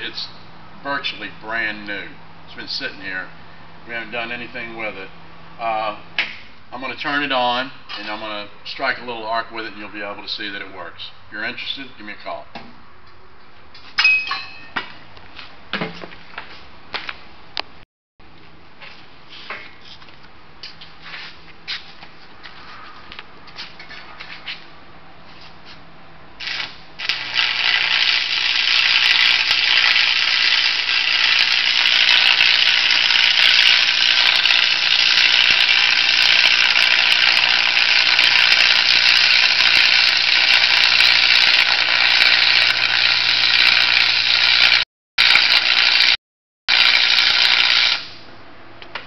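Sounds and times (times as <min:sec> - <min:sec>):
welding arc crackling hiss: 0:26.4 - 0:48.2.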